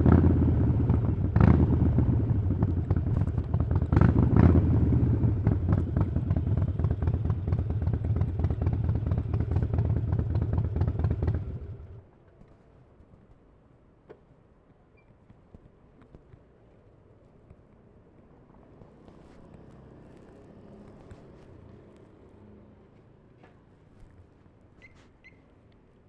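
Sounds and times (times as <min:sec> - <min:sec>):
motorcycle engine revving and idling: 0:00.0 - 0:12.0.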